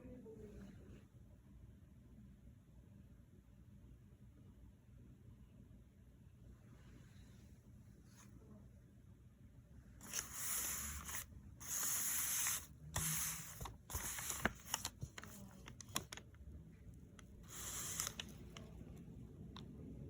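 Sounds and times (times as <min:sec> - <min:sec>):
paper rustling: 0:10.0 - 0:16.3, 0:17.4 - 0:18.8.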